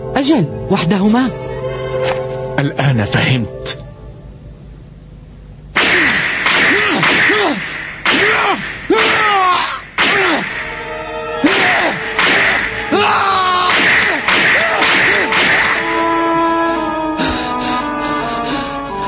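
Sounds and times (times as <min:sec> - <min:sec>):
background music: 0:00.0 - 0:04.8, 0:08.1 - 0:19.0
cartoon swishing strike effects: 0:05.8 - 0:10.8, 0:11.4 - 0:13.0, 0:13.6 - 0:15.8.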